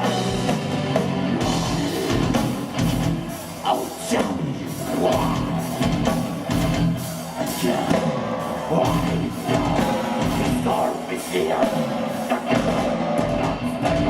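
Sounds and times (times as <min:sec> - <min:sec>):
metal band playing: 0:00.0 - 0:14.0
person singing: 0:03.4 - 0:06.6, 0:07.2 - 0:14.0.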